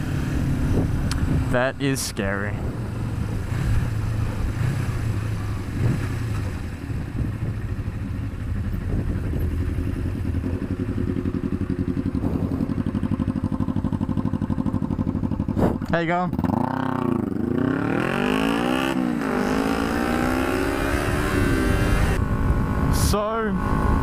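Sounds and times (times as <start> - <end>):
wind noise on microphone: 0.4 - 1.6, 2.5 - 13.0, 15.5 - 15.9, 20.3 - 24.0
motorcycle engine idling: 6.4 - 17.4.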